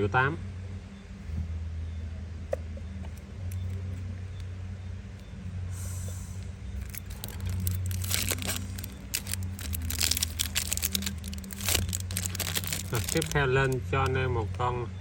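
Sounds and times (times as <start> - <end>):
steady low hum: 0.0 - 15.0
packaging crinkling: 6.8 - 14.2.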